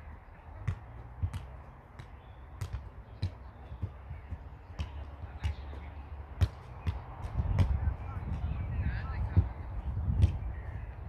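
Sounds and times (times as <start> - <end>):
football kicks thudding: 0.6 - 4.0, 9.3 - 10.4.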